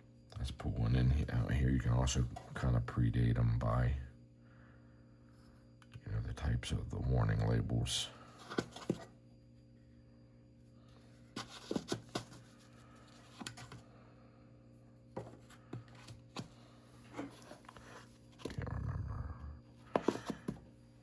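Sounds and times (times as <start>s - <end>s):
faint hum: 0.0s - 21.0s.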